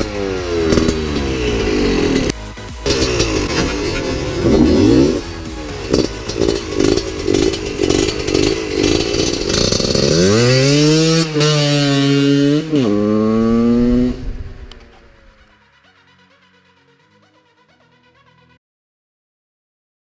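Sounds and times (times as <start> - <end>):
motorcycle accelerating through gears: 0.0 - 15.4
motorcycle engine revving: 0.0 - 15.5.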